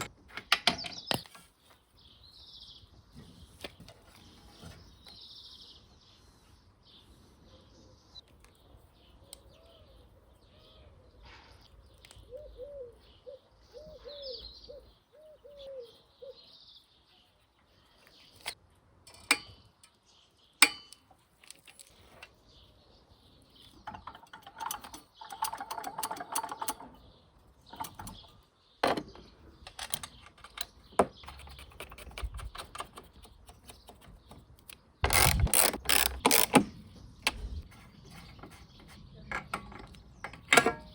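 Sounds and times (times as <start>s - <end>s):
faint bird chirps: 3.8s - 18.5s
parts being handled clicking: 18.4s - 20.0s, 20.6s - 22.4s, 23.6s - 27.0s, 27.6s - 40.9s.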